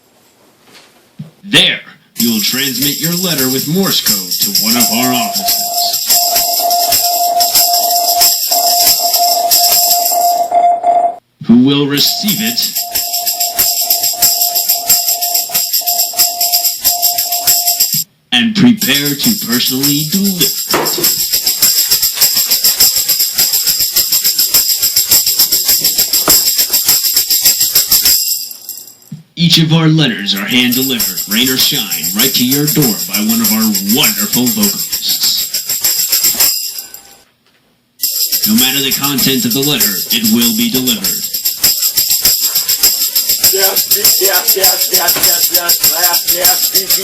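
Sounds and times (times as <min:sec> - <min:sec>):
tambourine shaken and struck: 0:02.2 - 0:10.5, 0:12.0 - 0:18.1, 0:18.8 - 0:29.1, 0:30.4 - 0:37.2, 0:38.0 - 0:47.0
person singing: 0:04.4 - 0:09.7.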